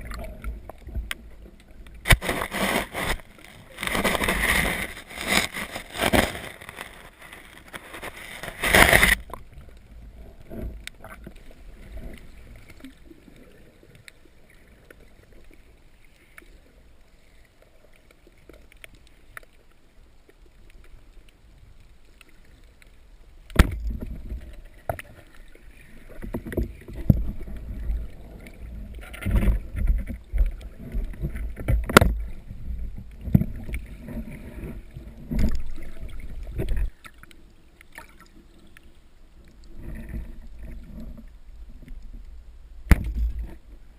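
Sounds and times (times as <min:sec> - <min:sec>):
faint clicks: 0:00.0 - 0:02.1, 0:09.0 - 0:32.3
water sloshing and splashing: 0:00.0 - 0:43.9.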